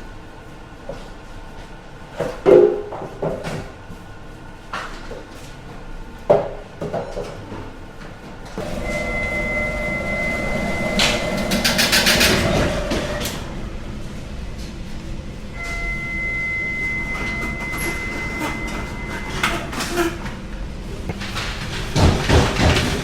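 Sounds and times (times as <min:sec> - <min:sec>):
machinery low rumble: 0:08.5 - 0:23.0
high machine whine: 0:08.6 - 0:21.0.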